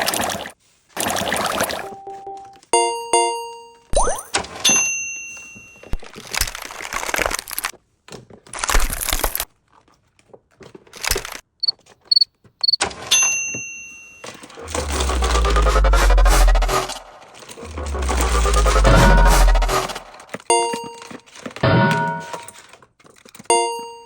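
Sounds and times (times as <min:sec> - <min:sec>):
short high beeps: 0:01.7 - 0:03.7
ringing chime: 0:01.7 - 0:03.9, 0:04.7 - 0:06.0, 0:13.2 - 0:14.4
items rustling and clattering: 0:05.3 - 0:13.2, 0:14.1 - 0:23.5
bass-heavy electronic music: 0:14.6 - 0:20.2.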